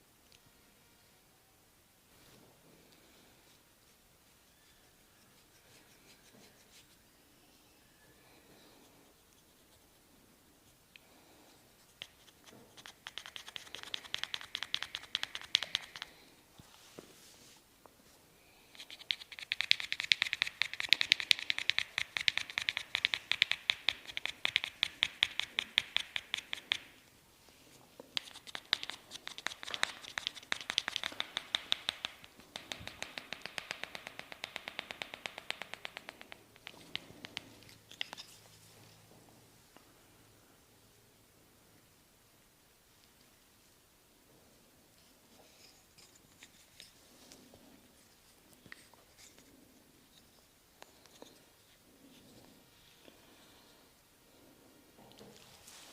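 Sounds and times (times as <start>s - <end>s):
fingers crackling hair: 12.0s - 16.2s, 18.8s - 26.9s, 28.1s - 38.3s.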